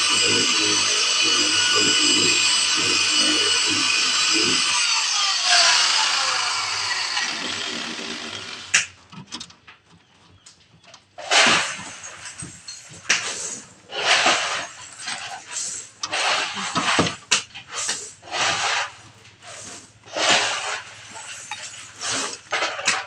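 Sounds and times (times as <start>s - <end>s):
loud scrape: 0.0s - 8.8s, 13.2s - 17.1s, 17.8s - 23.0s
power tool whining: 0.0s - 9.0s.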